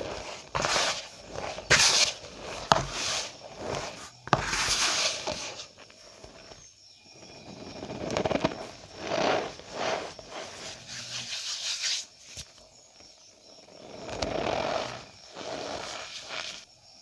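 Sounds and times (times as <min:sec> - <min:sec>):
powder squeezed crunchy squeaks: 0:00.0 - 0:06.5, 0:07.4 - 0:12.6, 0:13.7 - 0:16.7.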